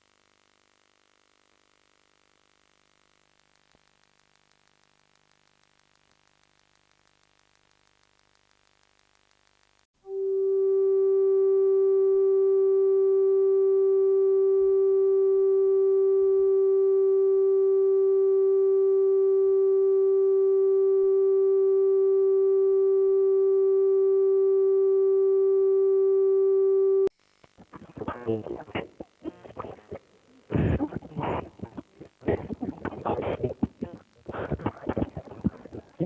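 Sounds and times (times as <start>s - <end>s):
steady low electronic tone: 10.1s - 27.1s.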